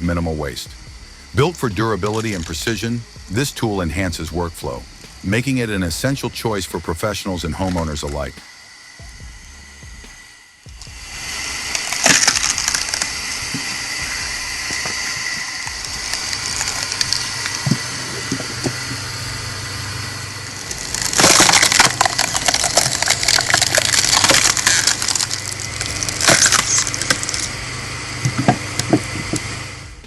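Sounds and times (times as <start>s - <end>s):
log splitter motor hum: 0.0s - 30.0s
wood cracking and splintering: 20.5s - 27.6s.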